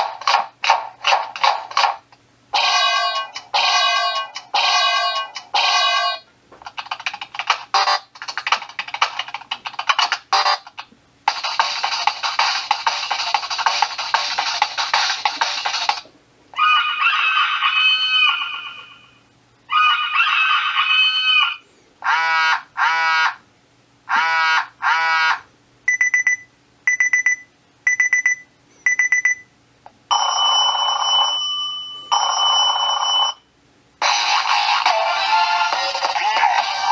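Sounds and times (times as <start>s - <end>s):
quick alarm beeps: 25.9s - 29.5s.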